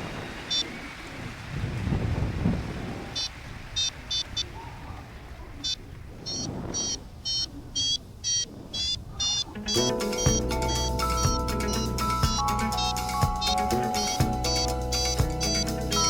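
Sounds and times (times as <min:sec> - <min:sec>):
wind rushing over microphone: 0:00.0 - 0:14.5
variometer beeping: 0:05.6 - 0:16.0.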